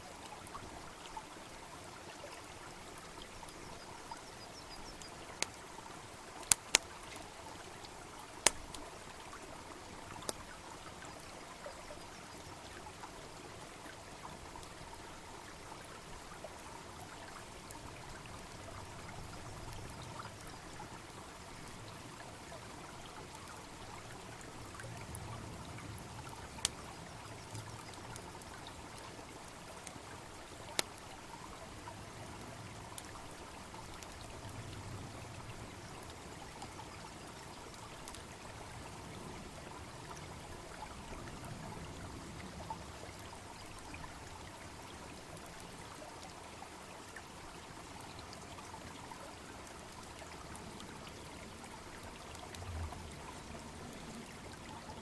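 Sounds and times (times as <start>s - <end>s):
stream babbling: 0.0s - 55.0s
bonfire crackling and popping: 6.4s - 7.3s, 8.3s - 8.8s, 30.8s - 31.0s.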